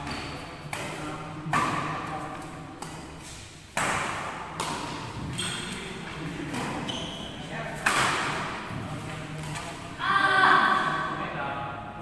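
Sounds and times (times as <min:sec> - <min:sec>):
rackets hitting shuttlecock: 0:00.0 - 0:05.8, 0:07.8 - 0:08.8.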